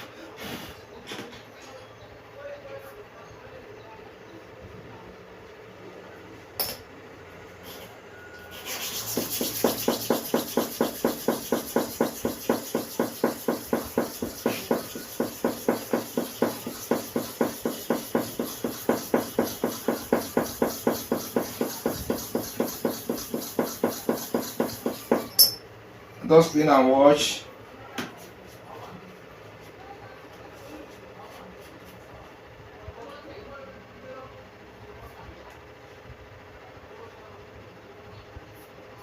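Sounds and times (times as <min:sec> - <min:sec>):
blade scraping on sharpening stone: 0:22.1 - 0:25.6.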